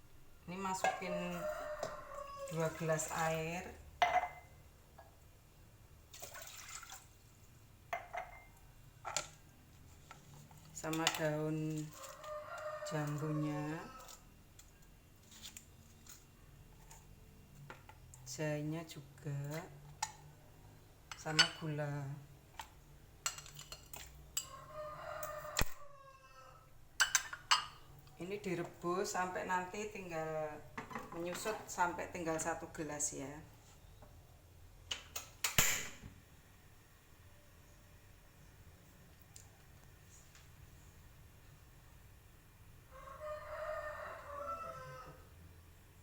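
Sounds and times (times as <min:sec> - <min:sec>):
kitchenware clinking: 0:04.0 - 0:04.5, 0:07.9 - 0:09.4, 0:21.1 - 0:21.7, 0:23.2 - 0:24.5, 0:27.0 - 0:27.9
water pouring into a pot: 0:06.1 - 0:07.4
water splash: 0:06.2 - 0:07.0.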